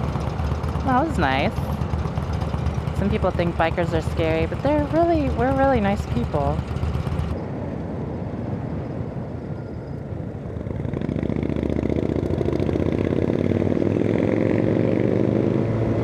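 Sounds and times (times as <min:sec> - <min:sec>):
scooter engine accelerating: 0:00.0 - 0:07.4, 0:10.8 - 0:16.0.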